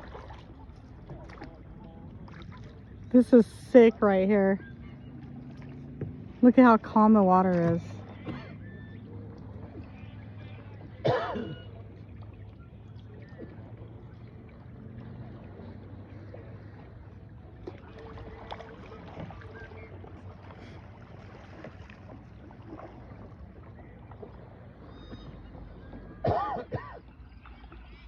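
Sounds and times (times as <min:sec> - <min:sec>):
faint water: 0:00.0 - 0:28.0.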